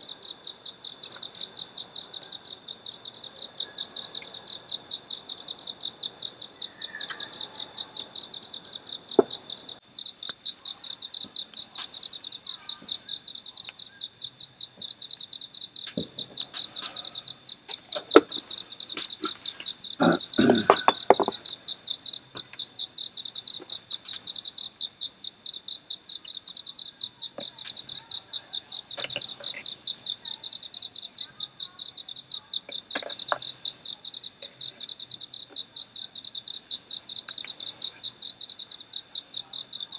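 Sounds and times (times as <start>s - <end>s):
crickets chirping: 0.0s - 39.9s
high insect drone: 0.0s - 39.9s
clicks and knocks: 20.6s - 21.4s.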